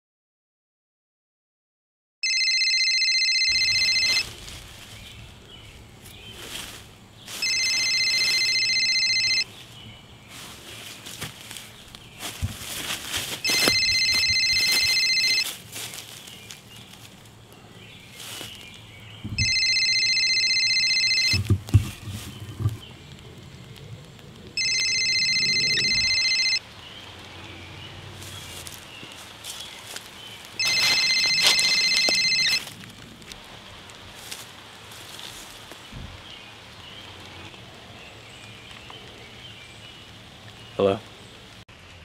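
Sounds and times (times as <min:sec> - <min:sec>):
cell phone ringing: 0:02.2 - 0:04.3, 0:07.4 - 0:09.5, 0:13.4 - 0:15.5, 0:19.4 - 0:21.7, 0:24.6 - 0:26.6, 0:30.6 - 0:32.6
rustling: 0:03.5 - 0:25.4, 0:28.1 - 0:36.2.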